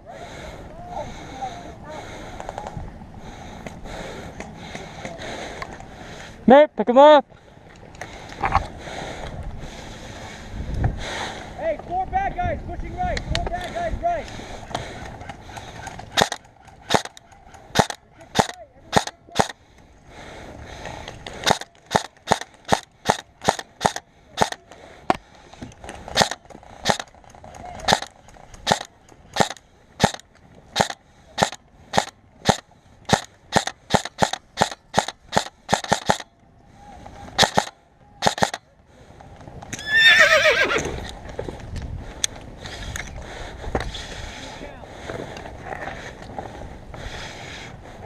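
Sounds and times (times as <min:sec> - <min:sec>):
airsoft gun shots: 0:16.2 - 0:17.1, 0:17.7 - 0:19.5, 0:27.9 - 0:30.2, 0:30.8 - 0:36.2, 0:37.4 - 0:38.6.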